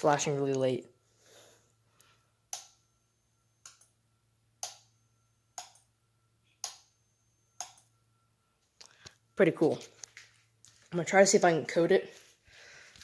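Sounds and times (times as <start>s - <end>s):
alarm strobe ticking: 0.0s - 12.0s
faint steady high tone: 0.0s - 13.0s.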